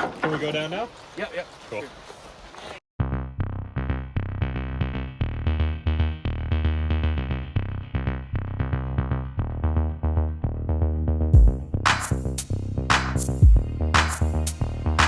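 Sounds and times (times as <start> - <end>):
electronic music with drum-machine beat: 11.4 - 15.0.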